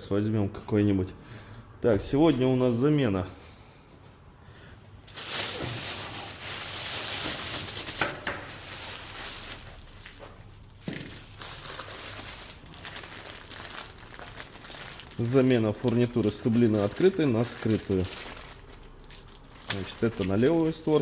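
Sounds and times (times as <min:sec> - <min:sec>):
plastic bag rustling: 0:05.0 - 0:21.0.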